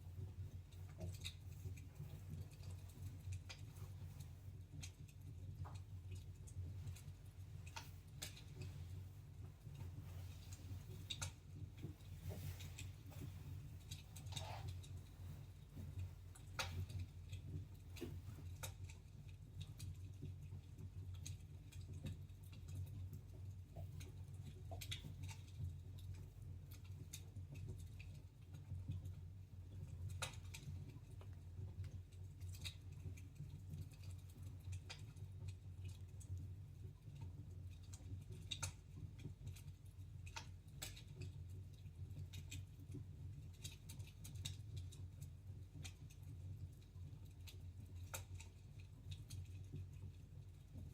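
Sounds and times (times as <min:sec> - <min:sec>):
fire crackling and popping: 0:00.0 - 0:29.1.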